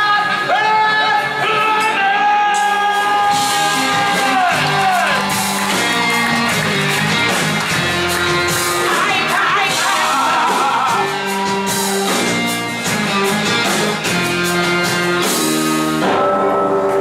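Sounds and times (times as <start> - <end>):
live band playing: 0.0 - 17.0
person singing: 8.7 - 11.5.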